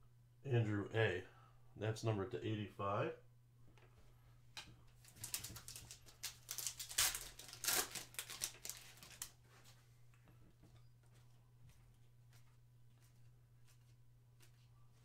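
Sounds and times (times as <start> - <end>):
faint low hum: 0.0 - 15.0
foil pack tearing and crinkling: 5.1 - 9.4.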